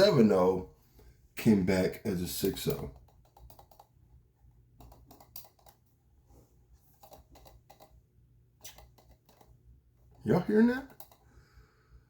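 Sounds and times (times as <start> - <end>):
low steady hum: 0.0 - 12.0
faint irregular clicks and taps: 2.4 - 6.0, 6.8 - 10.2, 10.8 - 11.3.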